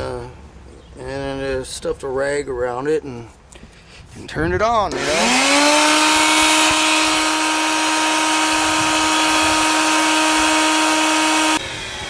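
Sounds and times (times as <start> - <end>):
wet vac motor whine: 4.9 - 12.0.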